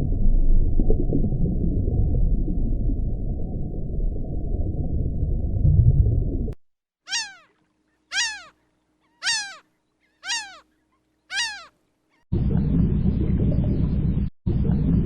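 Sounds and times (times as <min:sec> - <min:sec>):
low rumble: 0:00.0 - 0:06.6
cat meowing: 0:07.1 - 0:07.5, 0:08.1 - 0:08.5, 0:09.1 - 0:09.6, 0:10.2 - 0:10.6, 0:11.3 - 0:11.7.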